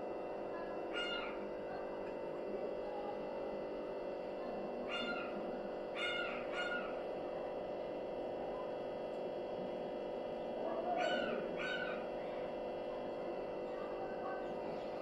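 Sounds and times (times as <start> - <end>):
steady low hum: 0.0 - 15.0
cat mewing: 0.9 - 1.5, 4.9 - 7.0, 10.8 - 12.1.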